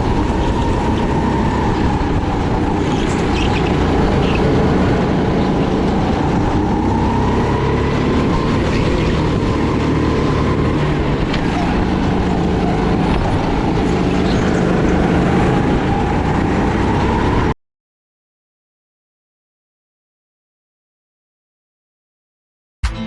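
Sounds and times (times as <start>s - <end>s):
jet ski engine whining: 0.0s - 17.5s.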